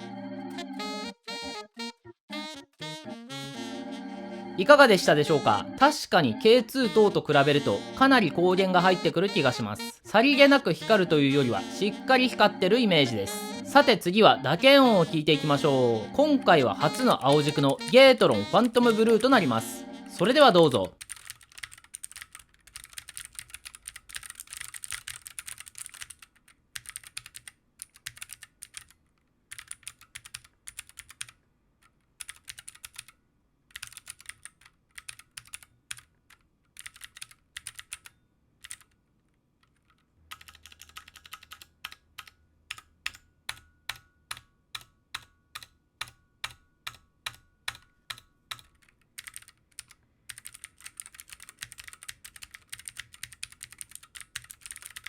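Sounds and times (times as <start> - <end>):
clicky mechanical keyboard typing: 21.0 - 31.4, 32.2 - 39.0, 39.6 - 55.0.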